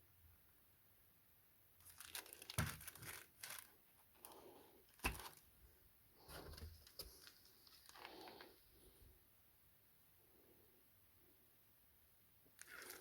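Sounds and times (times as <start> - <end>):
packaging crinkling and rustling: 1.8 - 5.5, 6.3 - 8.6, 12.6 - 13.0.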